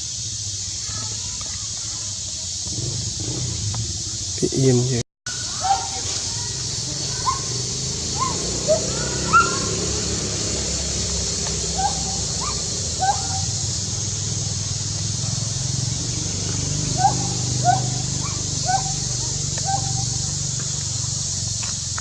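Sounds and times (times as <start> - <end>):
steady hiss: 0.0 - 9.1, 9.7 - 17.6
monkey squeaky calls: 5.3 - 10.0, 11.6 - 13.7, 16.9 - 20.3.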